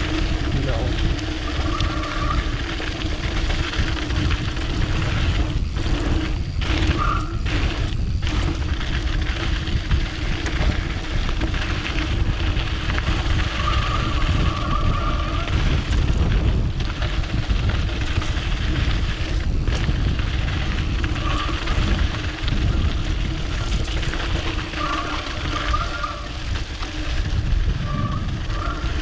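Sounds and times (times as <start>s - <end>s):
brake squeals: 0.0s - 8.5s, 13.0s - 15.8s, 21.0s - 22.3s, 23.4s - 29.0s
tyres rumbling over dirt: 0.0s - 29.0s
wind rushing over microphone: 0.0s - 29.0s.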